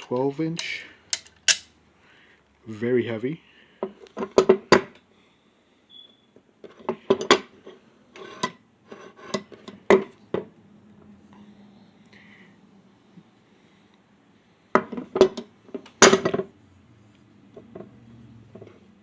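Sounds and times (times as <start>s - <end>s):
metal tool clacking and clinking: 0.0s - 1.7s.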